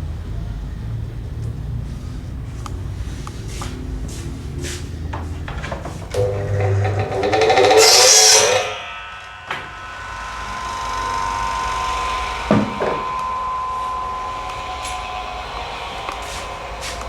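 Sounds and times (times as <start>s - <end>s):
wood lathe whining: 5.4s - 17.0s.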